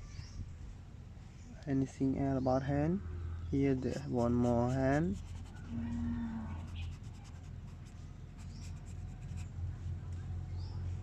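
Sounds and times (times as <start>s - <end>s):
steady low hum: 0.0s - 11.0s
highlighter scratching on paper: 3.8s - 6.0s.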